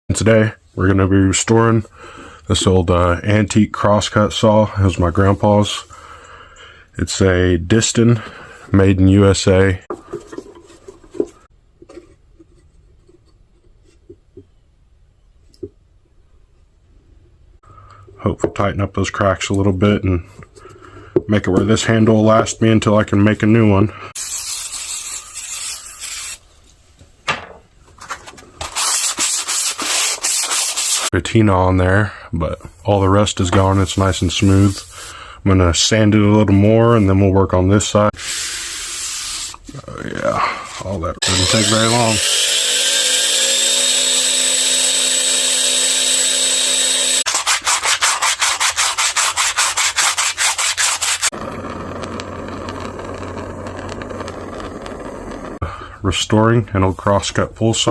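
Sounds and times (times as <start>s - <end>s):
sandpaper scraping steel blade: 24.2s - 26.4s, 28.6s - 31.1s, 33.6s - 35.1s, 38.2s - 39.6s, 40.8s - 51.4s
power sander whining: 41.2s - 47.3s.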